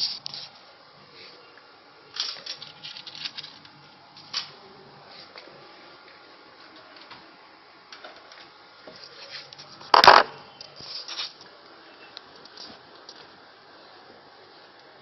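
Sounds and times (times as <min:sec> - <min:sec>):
small handling clicks and rustles: 0:02.1 - 0:04.5.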